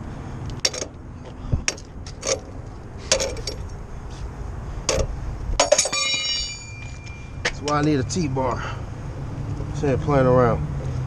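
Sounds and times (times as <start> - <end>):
lug wrench clinking on nuts: 0.5 - 1.0, 1.7 - 3.8, 4.8 - 8.3.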